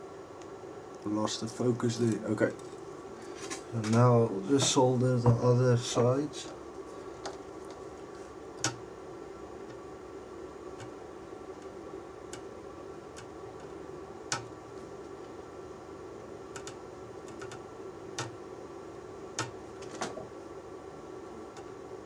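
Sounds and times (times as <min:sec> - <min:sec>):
steady hum: 0:00.0 - 0:22.0
soldering tools tapping: 0:08.5 - 0:08.9, 0:10.7 - 0:15.4, 0:16.5 - 0:18.4, 0:19.3 - 0:20.3.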